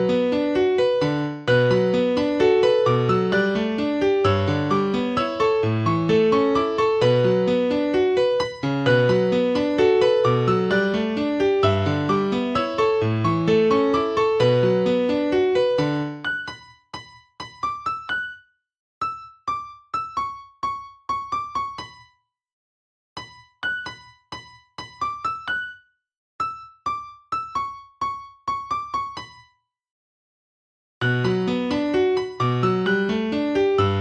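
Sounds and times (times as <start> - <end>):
plucked keyboard melody: 0.0 - 18.4, 31.0 - 34.0.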